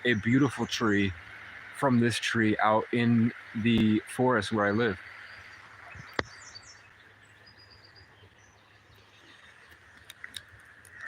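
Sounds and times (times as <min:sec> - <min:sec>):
bird chirps: 0:03.0 - 0:10.2
small clicks: 0:09.7 - 0:11.0.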